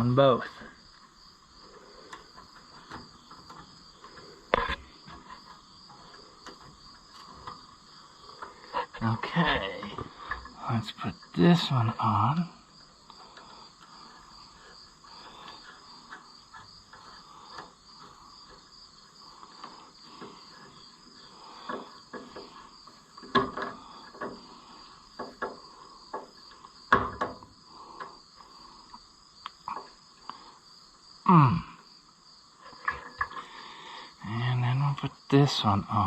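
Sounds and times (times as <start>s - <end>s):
crickets chirping: 0.0s - 36.0s
hands working rubber hose: 13.1s - 30.3s.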